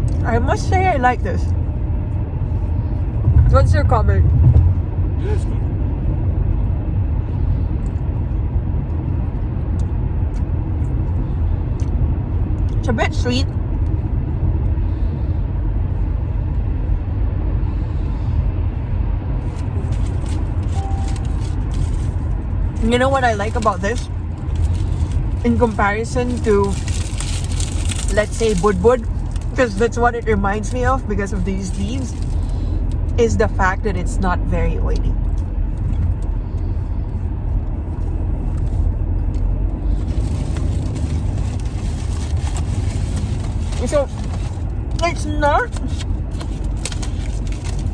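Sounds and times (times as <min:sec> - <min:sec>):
car cabin road and engine rumble: 0:00.0 - 0:47.9
faint tone: 0:20.8 - 0:21.6.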